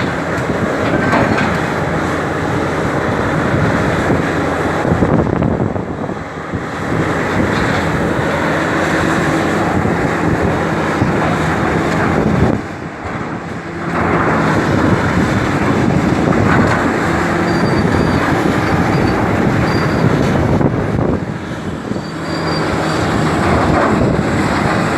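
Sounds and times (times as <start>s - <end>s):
excavator diesel engine under load: 0.0s - 24.9s
wind buffeting microphone: 0.0s - 24.9s.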